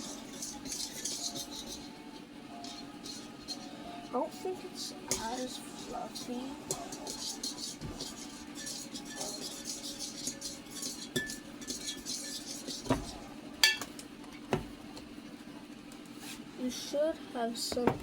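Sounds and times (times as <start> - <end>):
utensil clinking against bowl: 0.0 - 1.9, 2.6 - 3.7, 5.1 - 13.9
utensil scraping round bowl: 0.0 - 4.0, 4.8 - 13.4.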